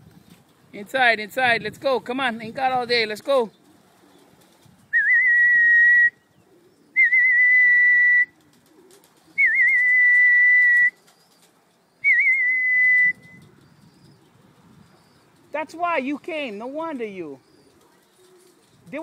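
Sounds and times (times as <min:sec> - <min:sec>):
long whistled calls: 0:04.9 - 0:08.4, 0:09.4 - 0:11.1, 0:12.0 - 0:13.5.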